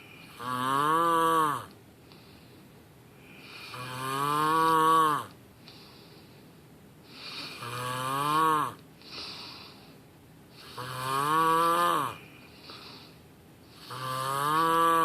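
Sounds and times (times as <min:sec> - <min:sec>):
soft airy breaths: 0:00.0 - 0:00.4, 0:01.9 - 0:04.0, 0:05.4 - 0:07.9, 0:08.8 - 0:11.0, 0:12.0 - 0:14.0
person snoring: 0:00.0 - 0:01.7, 0:03.2 - 0:05.3, 0:07.1 - 0:09.9, 0:10.6 - 0:15.0.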